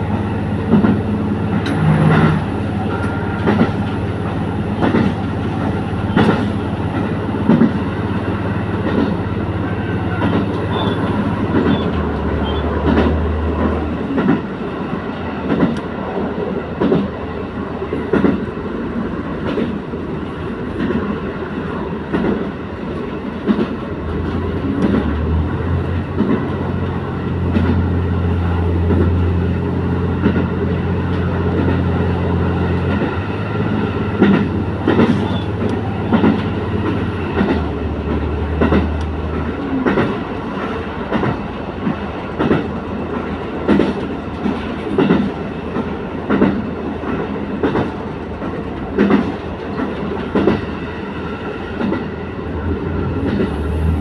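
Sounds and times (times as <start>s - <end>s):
diesel engine drone: 0.0s - 6.7s
train wheels clacking over rail joints: 0.6s - 9.3s, 10.0s - 14.6s, 15.4s - 15.9s, 16.8s - 17.2s, 22.0s - 50.8s.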